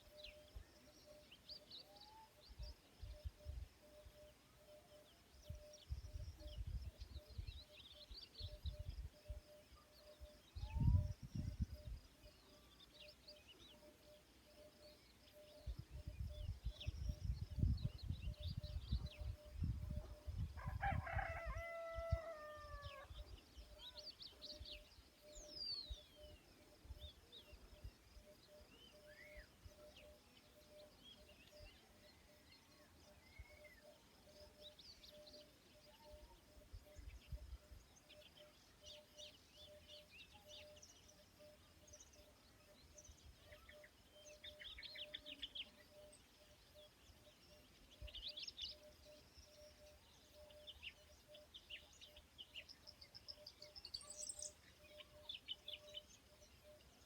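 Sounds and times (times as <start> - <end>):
rooster crowing: 20.6 - 23.1
small birds chirping: 32.9 - 57.0.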